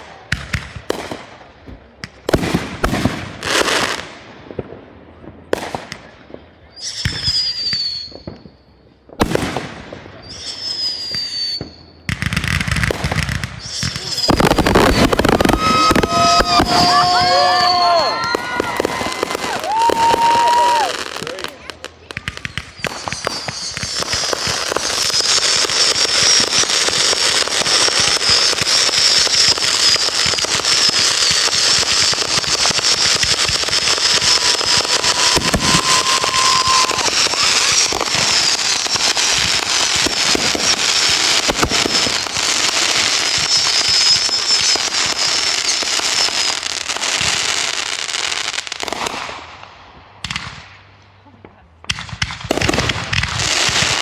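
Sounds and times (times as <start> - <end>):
fireworks crackling: 0.0 - 54.0
wavering high whistle: 6.7 - 8.6, 10.2 - 12.0, 13.6 - 21.0, 34.1 - 39.3.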